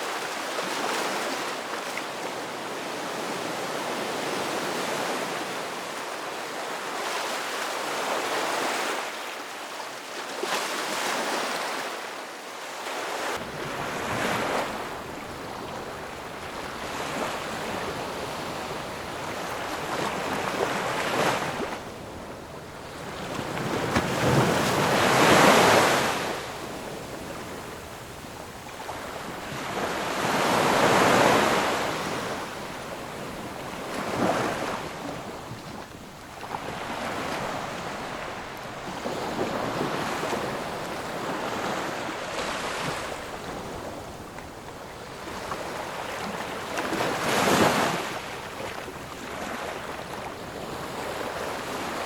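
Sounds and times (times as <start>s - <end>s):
ocean waves breaking: 12.9s - 52.0s.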